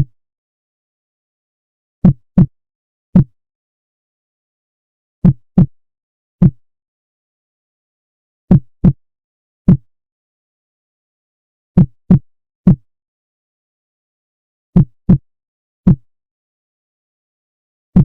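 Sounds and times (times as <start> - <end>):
heartbeat thumps: 2.0 - 2.5, 3.2 - 3.4, 5.2 - 5.7, 8.5 - 9.0, 9.7 - 9.9, 11.8 - 12.8, 14.8 - 15.2, 15.8 - 16.0.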